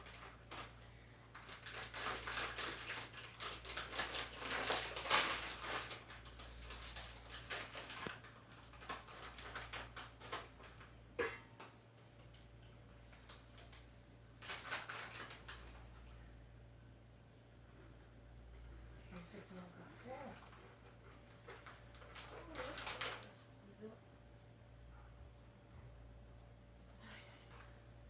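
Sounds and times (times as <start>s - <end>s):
objects clicking and rustling: 13.1s - 16.0s, 21.3s - 23.5s.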